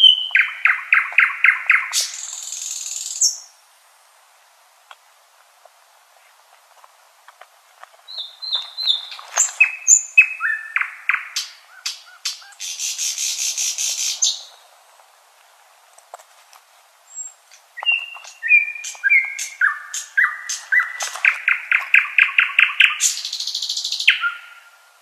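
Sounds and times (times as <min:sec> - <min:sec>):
nightingale singing: 0:00.0 - 0:03.6, 0:08.0 - 0:14.7, 0:17.0 - 0:25.0.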